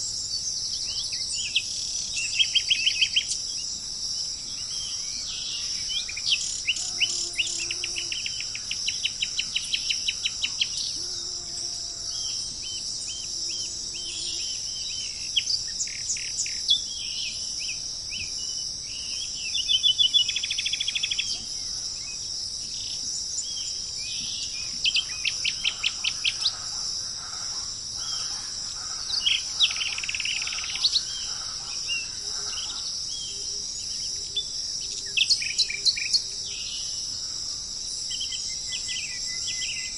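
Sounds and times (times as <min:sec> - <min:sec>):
insects droning: 0:00.0 - 0:39.9
birds chirping: 0:19.2 - 0:34.4.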